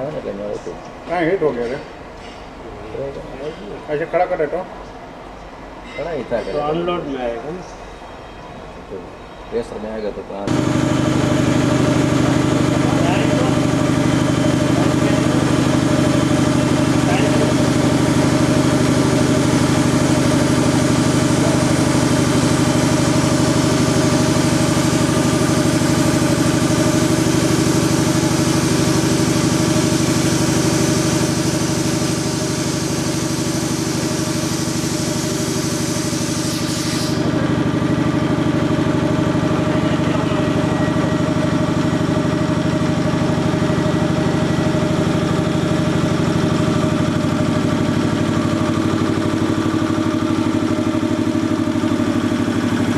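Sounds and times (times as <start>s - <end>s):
air compressor running: 9.6s - 52.9s
hiss of air: 29.8s - 37.4s.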